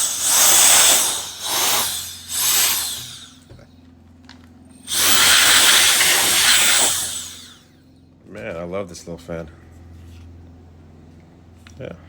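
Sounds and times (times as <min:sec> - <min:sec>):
air duster blowing: 0:00.0 - 0:03.5, 0:04.9 - 0:07.6.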